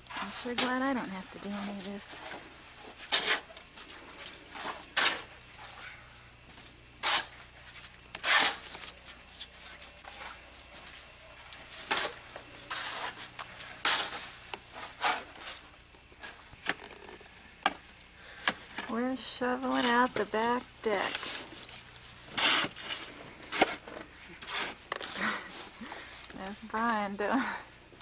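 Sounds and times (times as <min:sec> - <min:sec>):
snow shovel scraping snow: 0:00.1 - 0:03.5, 0:07.0 - 0:08.8, 0:11.7 - 0:16.4, 0:20.9 - 0:26.1.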